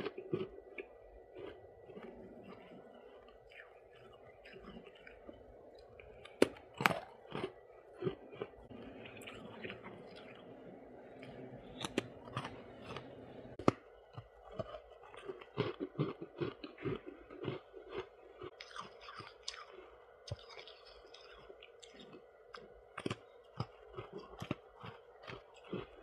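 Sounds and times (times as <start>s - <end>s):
chewing crunchy ice: 0.0s - 26.0s.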